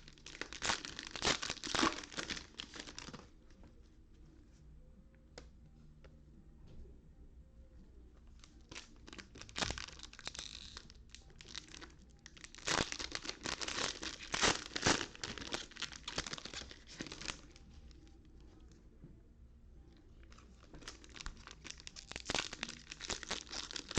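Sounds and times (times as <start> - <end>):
plastic wrappers crinkling and tearing: 0.0 - 3.2, 8.4 - 17.6, 20.2 - 23.9.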